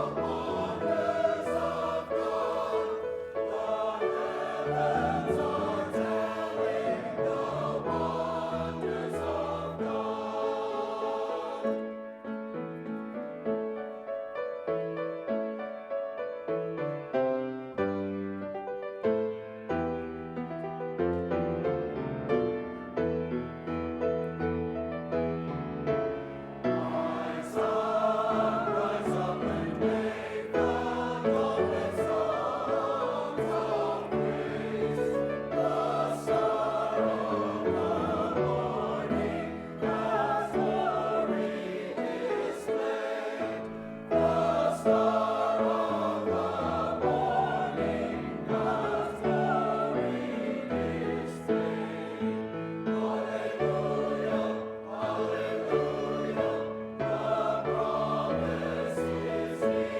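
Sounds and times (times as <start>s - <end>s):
choir singing: 0.0s - 13.6s, 25.5s - 59.9s.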